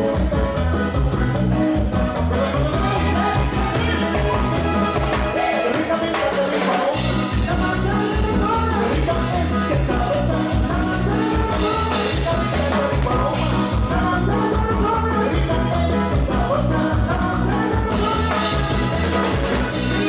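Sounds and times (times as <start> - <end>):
latin dance music: 0.0 - 20.0.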